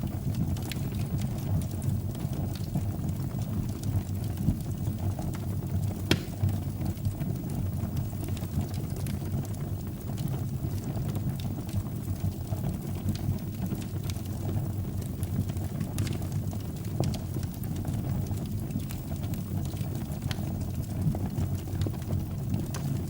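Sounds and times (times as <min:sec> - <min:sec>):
fire crackling: 0:00.0 - 0:23.0
fire rumbling: 0:00.0 - 0:23.0
sharp pop of fire: 0:06.1 - 0:06.5.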